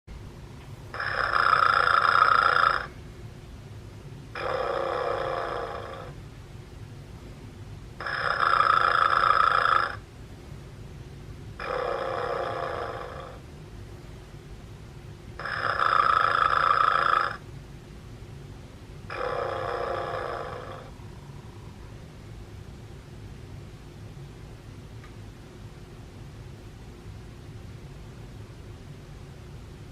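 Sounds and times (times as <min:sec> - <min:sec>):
snoring teddy bear toy: 0:00.9 - 0:02.9, 0:04.3 - 0:06.2, 0:08.0 - 0:10.0, 0:11.6 - 0:13.4, 0:15.4 - 0:17.4, 0:19.1 - 0:21.0.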